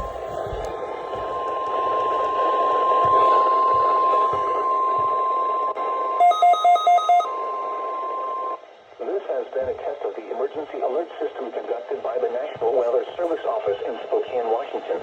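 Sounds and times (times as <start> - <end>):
radio static hiss: 0.0 - 6.0, 8.0 - 15.0
steady high alarm tone: 0.0 - 8.6
quick beeps: 4.6 - 7.4.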